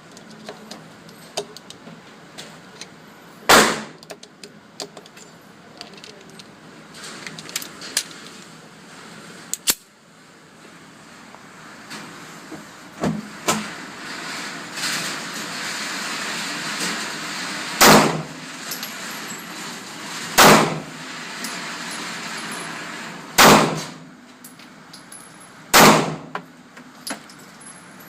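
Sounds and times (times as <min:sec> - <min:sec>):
gunshots: 0:03.5 - 0:04.0, 0:17.8 - 0:18.3, 0:20.4 - 0:20.8, 0:23.4 - 0:24.0, 0:25.7 - 0:26.3.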